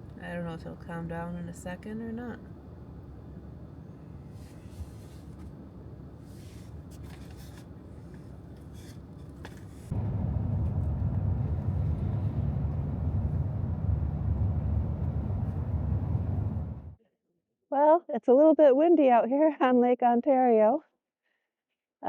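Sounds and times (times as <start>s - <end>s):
wind buffeting microphone: 9.9s - 17.0s.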